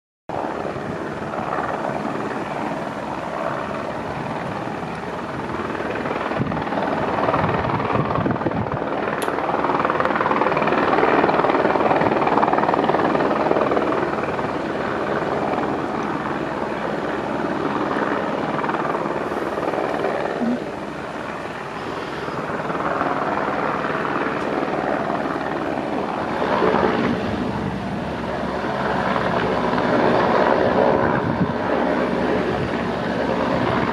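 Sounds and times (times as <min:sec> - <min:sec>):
helicopter rotor and engine: 0:00.3 - 0:33.9.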